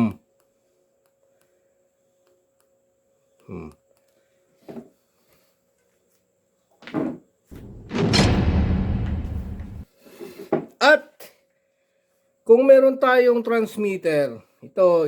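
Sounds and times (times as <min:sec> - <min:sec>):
rustling and clattering components: 0:07.5 - 0:09.8
short knocks: 0:07.5 - 0:09.8.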